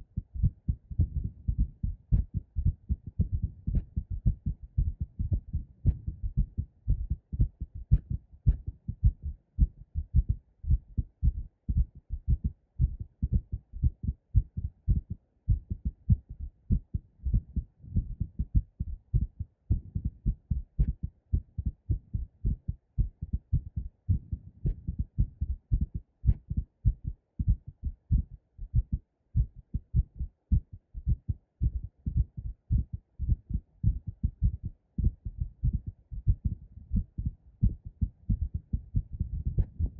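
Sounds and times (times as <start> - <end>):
heartbeat thumps: 0.0 - 39.9
pounding heartbeat: 0.0 - 39.9.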